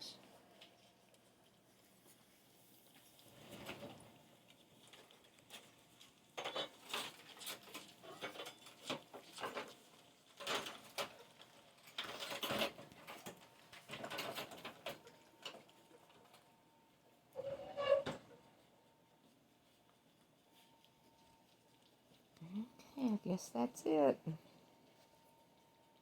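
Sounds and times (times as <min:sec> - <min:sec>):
puppies licking and lapping: 0:00.2 - 0:17.4, 0:18.4 - 0:26.0.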